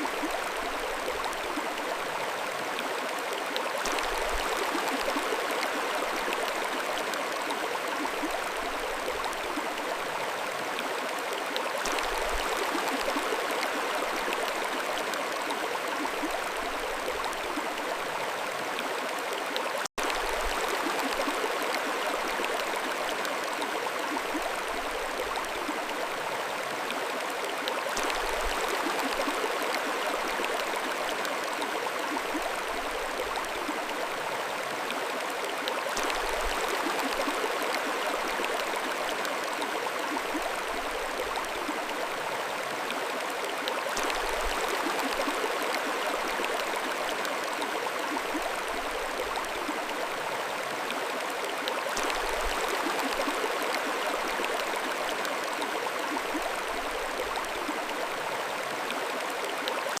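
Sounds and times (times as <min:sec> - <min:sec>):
stream rushing and gurgling: 0:00.0 - 1:00.0.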